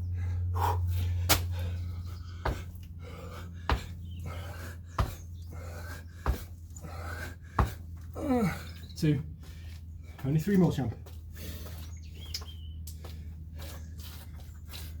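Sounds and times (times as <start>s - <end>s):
heavy panting: 0.0s - 10.2s
low hum: 0.0s - 10.2s
feet landing thuds: 1.2s - 8.6s.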